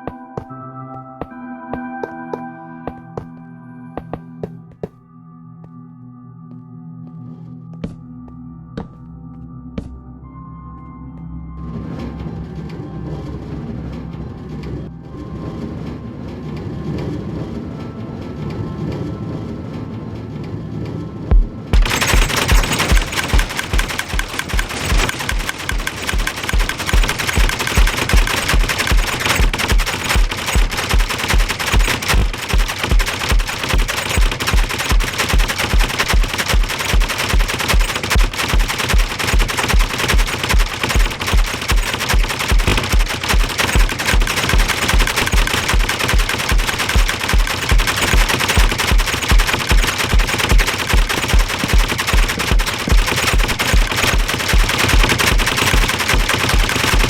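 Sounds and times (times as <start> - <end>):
low thumping: 21.3 - 49.2
noise machine clattering clicks: 21.3 - 57.0.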